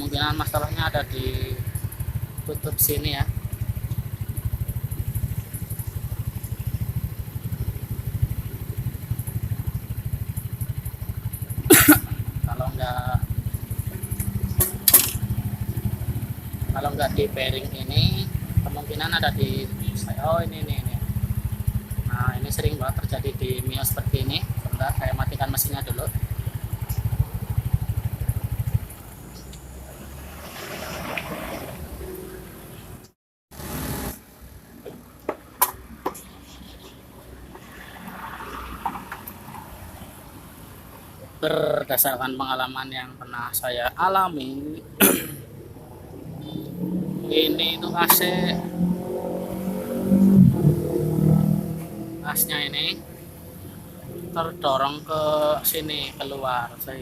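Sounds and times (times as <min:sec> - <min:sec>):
scooter engine idling: 0:00.0 - 0:29.8, 0:51.0 - 0:57.0
sharp clack: 0:14.2 - 0:15.2.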